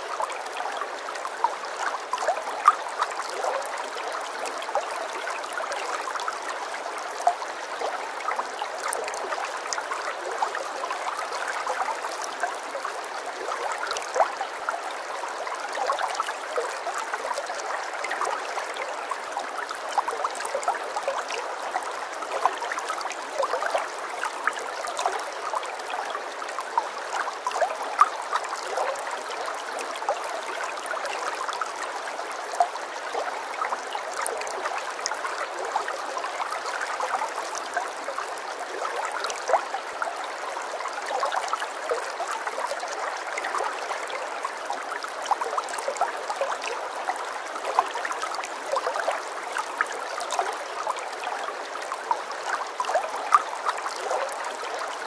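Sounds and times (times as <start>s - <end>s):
stream trickling and burbling: 0.0s - 55.0s.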